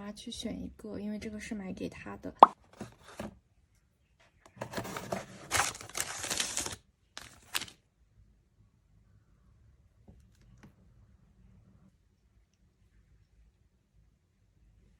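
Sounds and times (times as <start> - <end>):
packaging rustling and crinkling: 4.6 - 7.8.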